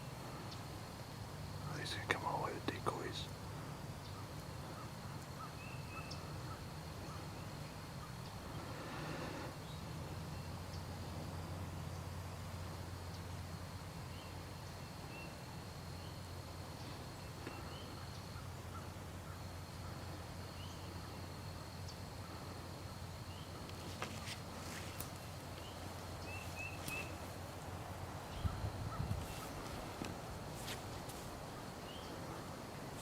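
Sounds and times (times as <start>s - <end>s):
steady low rumble: 24.4s - 33.0s
bird chirps: 25.6s - 27.3s.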